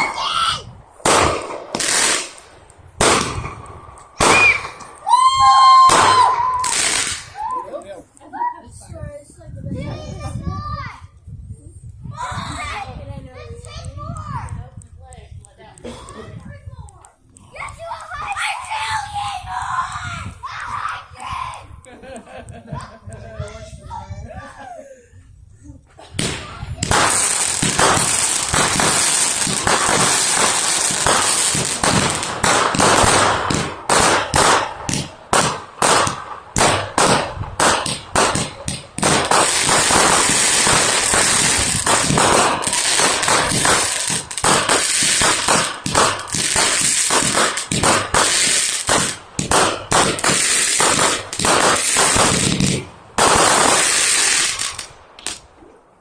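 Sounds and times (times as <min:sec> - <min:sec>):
firecrackers banging and crackling: 0:00.0 - 0:08.3, 0:26.0 - 0:55.5.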